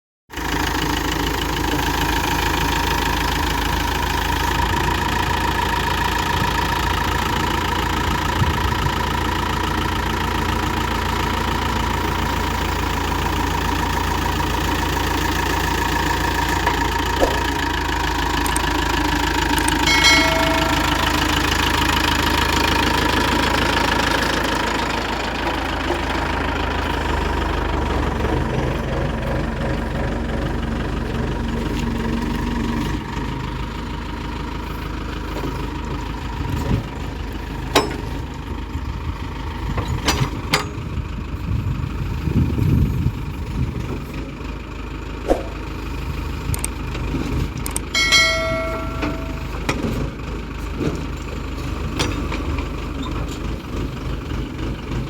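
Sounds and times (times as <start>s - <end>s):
diesel engine running: 0.3s - 55.0s
brief high tone: 19.8s - 22.0s, 48.0s - 49.6s.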